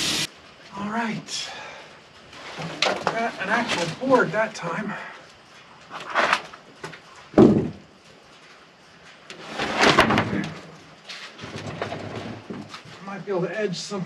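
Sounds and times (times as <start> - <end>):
heavy wooden thump: 7.3 - 7.8
board scraping: 9.3 - 12.8.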